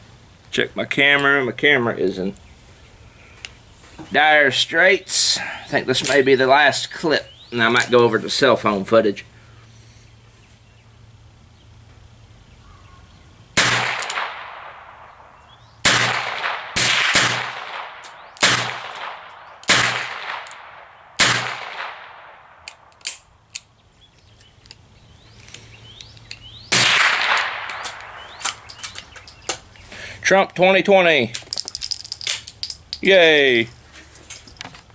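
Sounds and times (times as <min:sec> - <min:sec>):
gunshots with echo: 0:13.6 - 0:22.6, 0:26.7 - 0:28.7
small clicks: 0:22.6 - 0:26.5.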